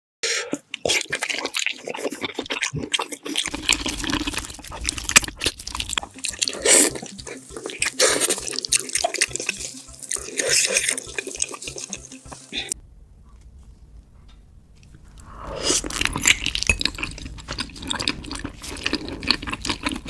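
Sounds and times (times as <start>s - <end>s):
wet chewing and lip-smacking: 0.3s - 20.0s.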